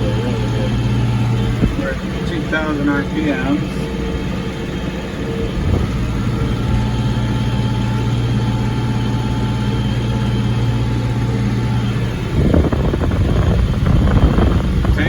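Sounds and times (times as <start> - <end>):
tractor diesel engine running: 0.0 - 15.0.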